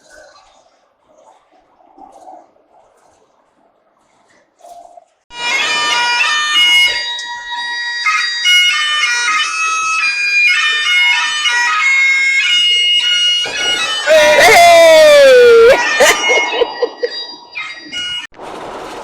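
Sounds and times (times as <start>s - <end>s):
bagpipe music: 5.3s - 18.3s.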